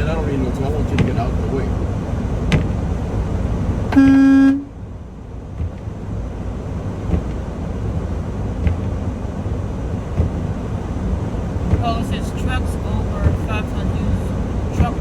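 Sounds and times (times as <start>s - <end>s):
truck engine rumble: 0.0s - 15.0s
truck horn blast: 3.9s - 4.8s.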